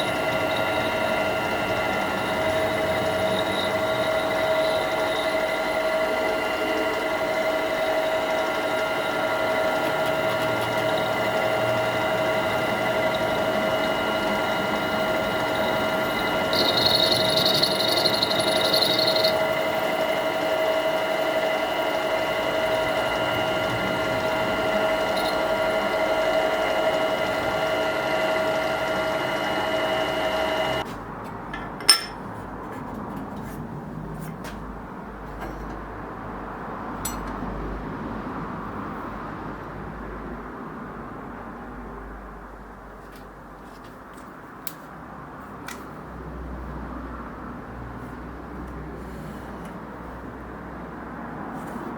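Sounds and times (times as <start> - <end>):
harsh metal cutting sound: 0.0 - 30.8
lathe motor and gear whine: 0.0 - 30.9.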